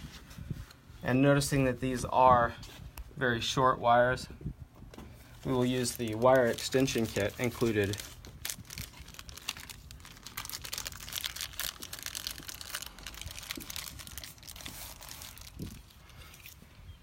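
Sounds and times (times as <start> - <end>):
wires and connectors rustling and clicking: 4.8 - 16.6.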